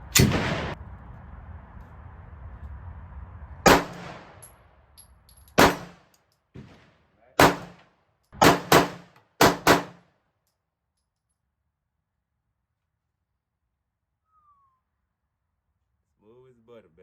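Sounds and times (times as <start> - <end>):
pistol shots: 0.1 - 0.8, 3.7 - 4.4, 5.6 - 6.0, 7.4 - 7.8, 8.4 - 10.0.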